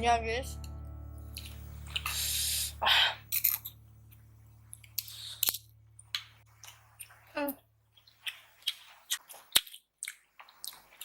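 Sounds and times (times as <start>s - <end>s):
close-miked chewing and biting: 4.7s - 11.0s.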